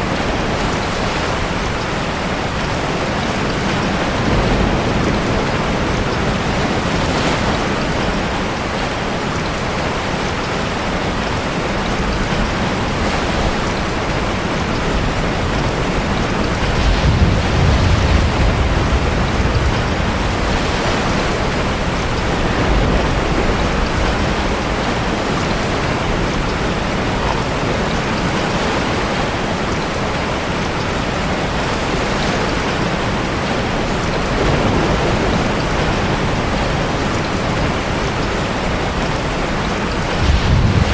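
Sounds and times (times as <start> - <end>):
heavy rain falling: 0.0 - 40.9
ocean waves surging: 0.0 - 40.9
deep rumble: 16.4 - 27.6, 40.1 - 40.9.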